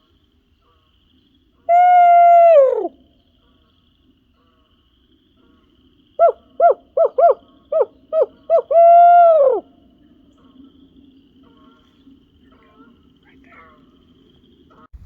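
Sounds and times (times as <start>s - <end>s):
owl call hoots: 1.6s - 3.6s, 6.2s - 10.8s.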